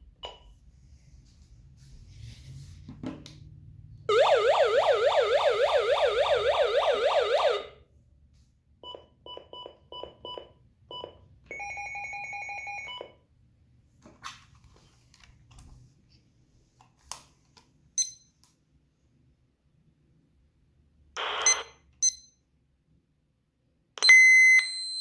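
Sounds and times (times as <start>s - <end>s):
electronic siren yelp: 4.1s - 7.8s.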